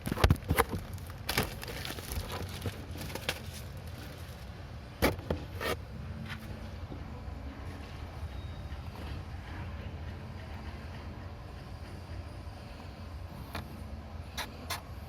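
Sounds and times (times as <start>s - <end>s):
paper pages rustling: 0.0s - 4.5s
steady low hum: 0.0s - 15.0s.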